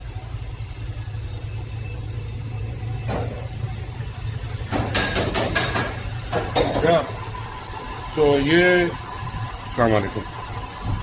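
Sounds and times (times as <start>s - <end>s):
car engine idling: 0.0s - 11.0s
knock: 4.7s - 6.9s.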